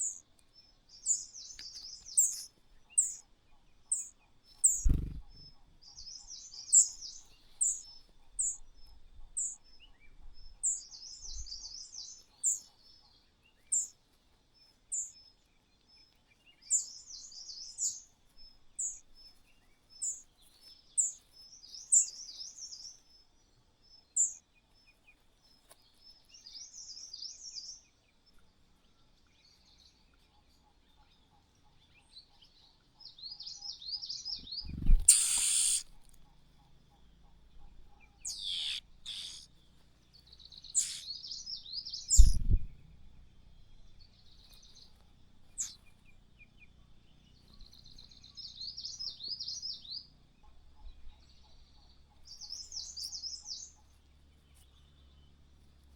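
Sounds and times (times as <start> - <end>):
fast twittering birds: 0.0 - 14.0, 33.0 - 55.9
high falling bird calls: 34.2 - 36.1, 38.2 - 42.8.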